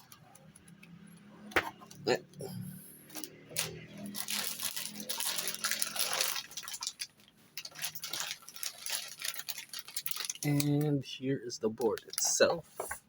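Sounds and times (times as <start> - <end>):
packaging crinkling and rustling: 3.1 - 10.9.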